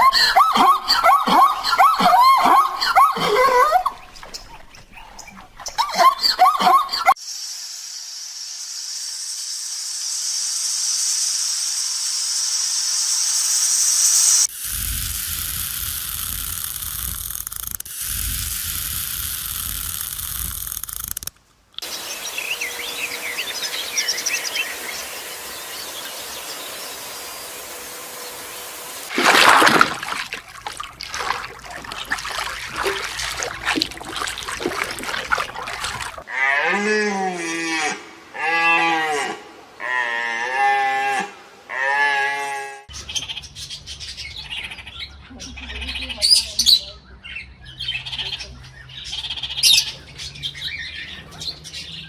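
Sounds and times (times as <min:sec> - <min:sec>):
loud animal outburst: 0:29.1 - 0:42.8.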